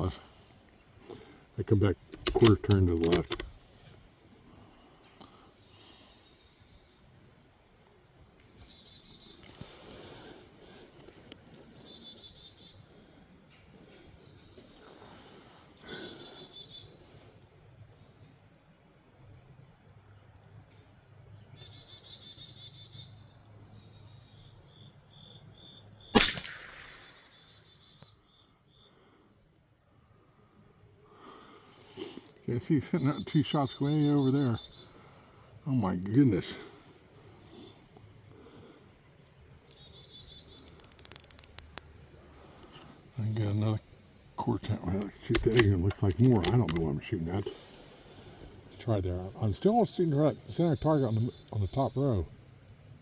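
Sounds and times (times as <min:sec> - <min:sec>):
insect chirring: 0:00.0 - 0:53.0
rifle shot crack: 0:02.2 - 0:03.5, 0:26.1 - 0:27.5, 0:45.1 - 0:46.8.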